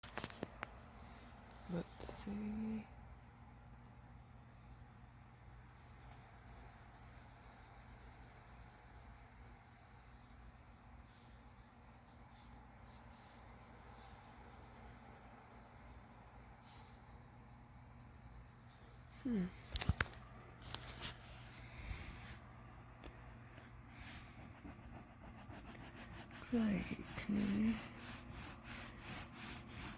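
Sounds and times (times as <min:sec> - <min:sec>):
pencil scratching on paper: 0:05.6 - 0:18.9, 0:22.0 - 0:29.9.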